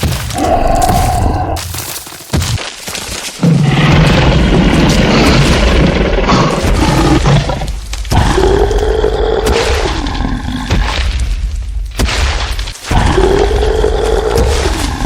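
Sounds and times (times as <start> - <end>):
dinosaur roar: 0.3 - 1.6, 3.4 - 10.8, 12.9 - 15.0.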